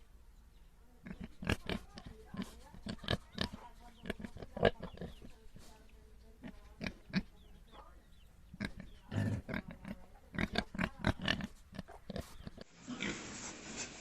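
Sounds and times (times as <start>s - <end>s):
pigs grunting: 1.1s - 5.3s, 8.6s - 13.3s.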